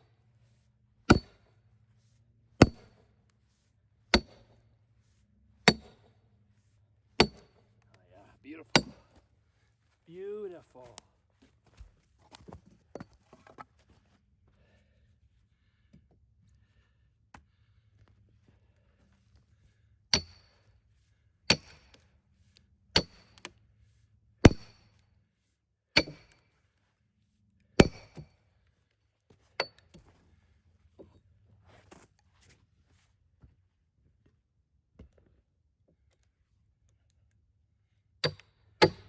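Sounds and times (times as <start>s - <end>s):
maul striking steel wedge: 1.1s - 1.4s, 2.6s - 3.0s, 4.1s - 4.5s, 5.7s - 6.1s, 7.2s - 7.6s, 8.7s - 9.0s, 20.2s - 20.5s, 21.5s - 21.9s, 23.0s - 23.3s, 24.5s - 24.8s, 26.0s - 26.4s, 27.8s - 28.2s, 38.2s - 39.0s.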